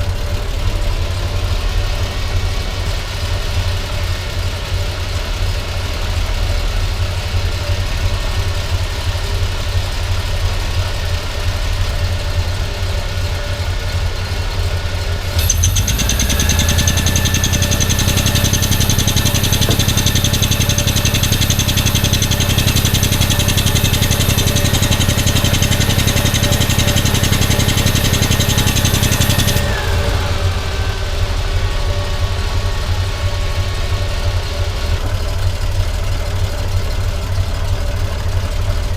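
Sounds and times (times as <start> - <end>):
car engine idling: 14.9 - 38.9
hiss and rising whine: 15.4 - 33.6.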